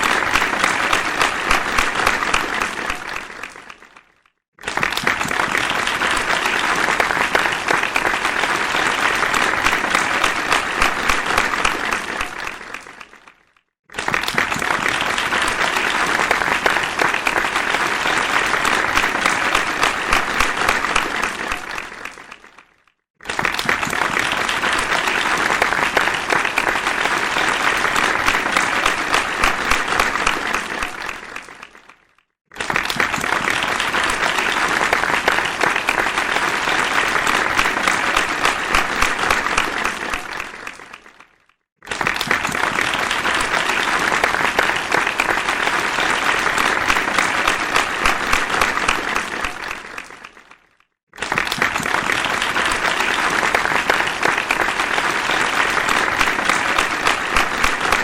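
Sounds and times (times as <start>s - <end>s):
crowd applause: 0.0s - 58.0s.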